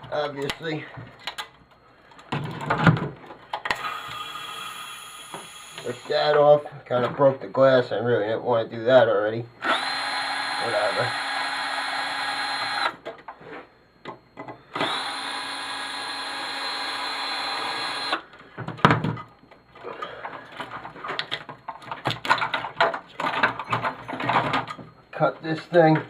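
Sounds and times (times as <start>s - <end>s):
clicks and knocks of parts handled: 0.4s - 3.8s, 18.3s - 24.9s
power drill whining: 3.7s - 6.2s, 9.6s - 13.0s, 14.7s - 18.3s.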